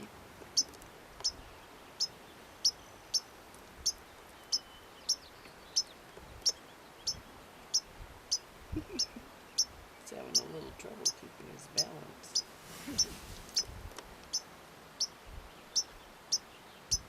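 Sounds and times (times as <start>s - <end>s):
small bird peeping: 0.0s - 17.0s.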